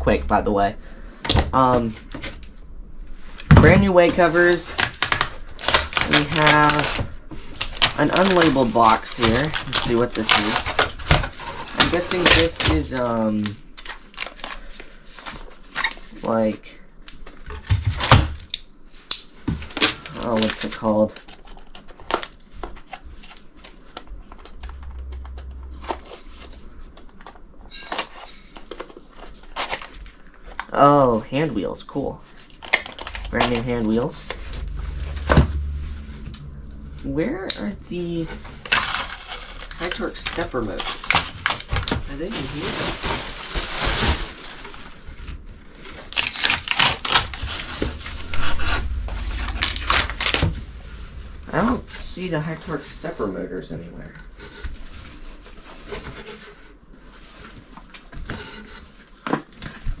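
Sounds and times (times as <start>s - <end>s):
rustling in cardboard box: 38.7s - 48.0s.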